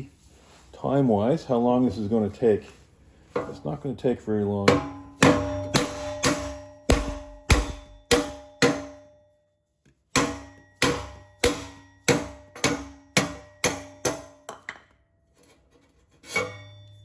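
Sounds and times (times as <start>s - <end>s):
mallet striking wood block on metal: 4.7s - 9.2s, 10.1s - 14.9s, 16.3s - 17.0s.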